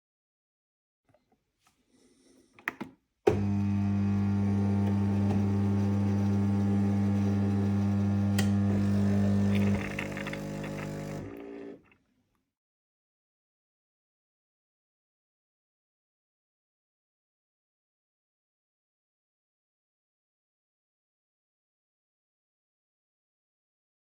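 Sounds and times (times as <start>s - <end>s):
coffee machine motor hum: 3.3s - 12.0s
coffee machine clicks: 8.1s - 11.7s.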